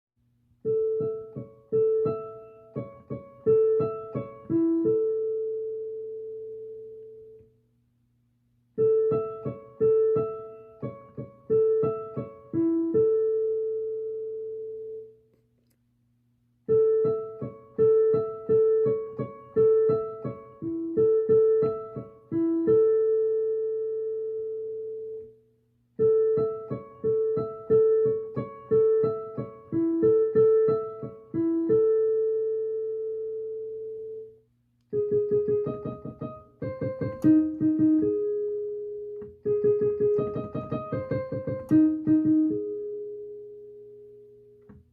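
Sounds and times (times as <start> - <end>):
piano chime melody: 0.6 - 7.4, 8.8 - 15.2.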